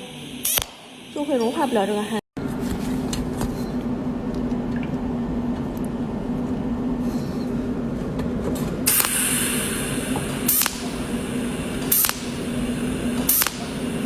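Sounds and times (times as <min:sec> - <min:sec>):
welding arc hissing crackle: 0:00.0 - 0:02.2, 0:08.8 - 0:14.0
welding machine humming: 0:00.0 - 0:02.3, 0:08.7 - 0:14.0.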